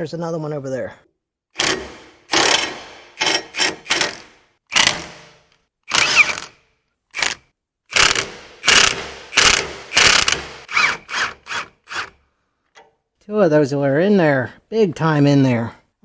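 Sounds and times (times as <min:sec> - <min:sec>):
ratchet wrench clicking: 0:08.0 - 0:11.3.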